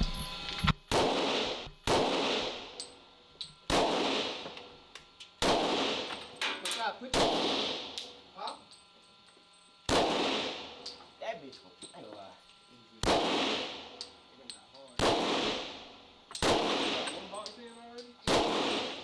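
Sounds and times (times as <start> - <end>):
gunshots echoing indoors: 0.9 - 2.8, 3.7 - 4.5, 5.4 - 6.2, 7.1 - 8.0, 9.9 - 10.9, 13.0 - 14.0, 15.0 - 17.3, 18.2 - 19.0.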